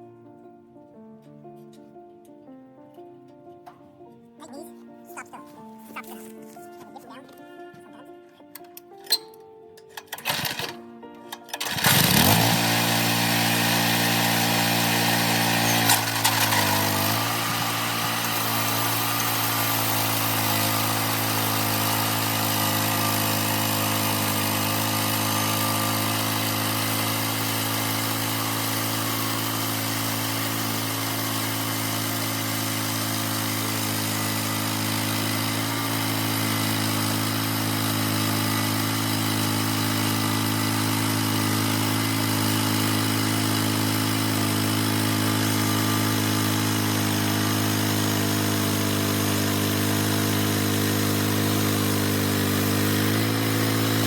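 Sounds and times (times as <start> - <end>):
small gasoline engine running: 9.9 - 54.0.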